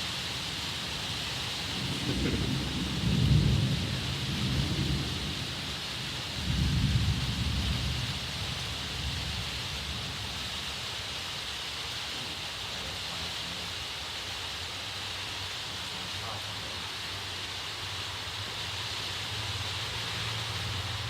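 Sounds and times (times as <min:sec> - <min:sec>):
steady hiss: 0:00.0 - 0:21.0
distant thunder rumbling: 0:01.0 - 0:10.7.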